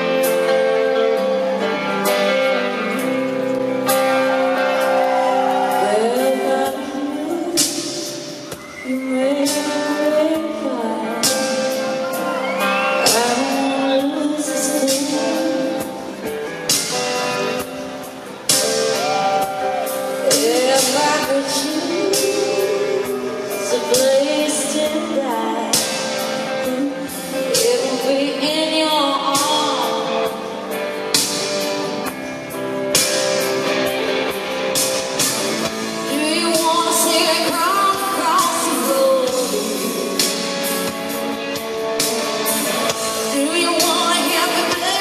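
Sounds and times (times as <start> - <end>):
live band accompaniment: 0.0 - 45.0
woman singing: 5.6 - 12.2, 13.0 - 16.2, 20.2 - 30.6, 36.0 - 40.8, 42.5 - 45.0.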